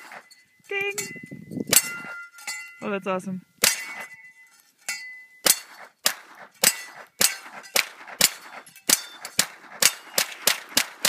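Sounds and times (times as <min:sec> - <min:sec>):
gunshots: 0:05.4 - 0:11.0.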